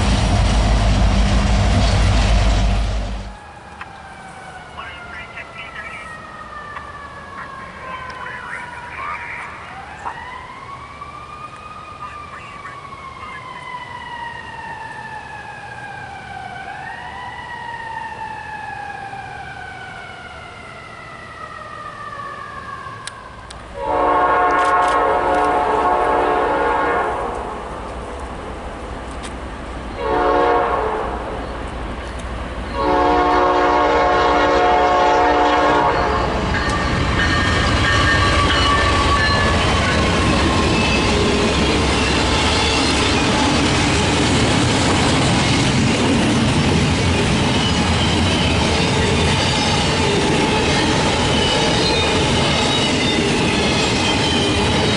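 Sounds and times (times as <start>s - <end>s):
train rumbling: 0.0s - 21.0s, 21.9s - 54.9s
emergency siren wailing: 3.2s - 27.1s, 32.8s - 54.9s
locomotive air horn blasts: 23.8s - 27.4s, 30.0s - 31.2s, 32.8s - 36.3s.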